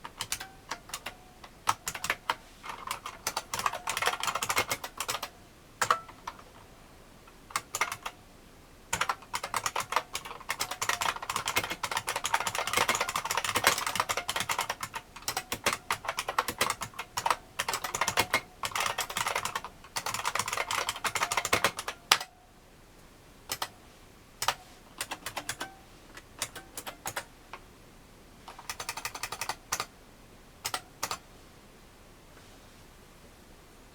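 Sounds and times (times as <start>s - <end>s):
clicky keyboard typing: 0.0s - 6.6s, 7.5s - 8.2s, 8.9s - 22.3s, 23.5s - 23.8s, 24.4s - 27.6s, 28.5s - 29.9s, 30.6s - 31.2s.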